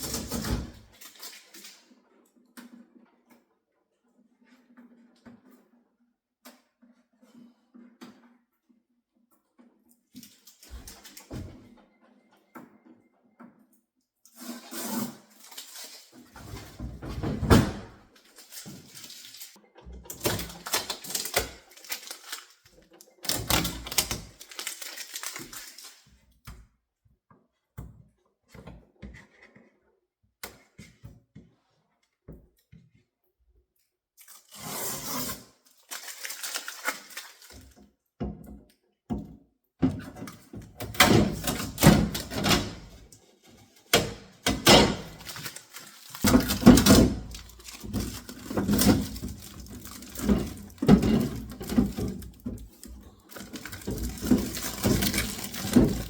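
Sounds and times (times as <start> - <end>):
packaging rustling and crinkling: 0.0 - 1.8, 14.4 - 26.2, 34.3 - 37.8, 40.9 - 56.0.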